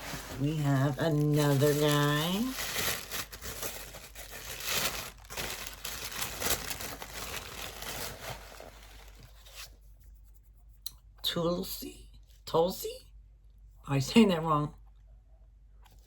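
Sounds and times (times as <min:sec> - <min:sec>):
plastic wrapping crinkling and tearing: 0:00.0 - 0:09.7.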